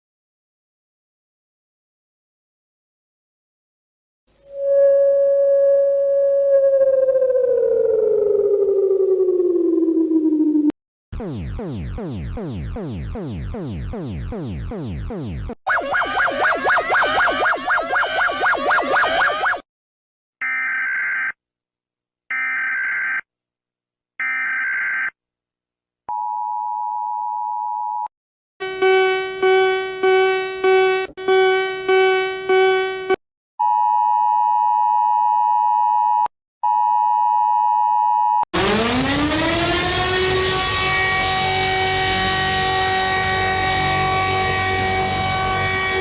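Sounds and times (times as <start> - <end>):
upward sweeping tone: 4.4 - 19.2, 38.6 - 46.0
pulsing buzzy tone: 9.5 - 19.6, 28.6 - 33.2, 38.6 - 46.0
steady alert tone: 11.2 - 17.4
warbling data-burst tones: 11.2 - 19.6.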